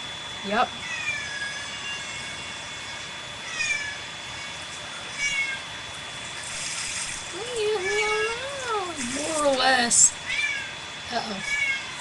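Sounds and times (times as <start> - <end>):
cat crying in distress: 0.8 - 5.7, 7.4 - 8.9, 10.2 - 12.0.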